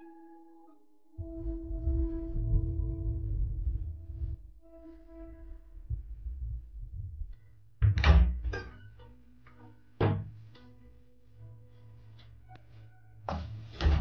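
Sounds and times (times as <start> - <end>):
low rumble: 1.2 - 8.9.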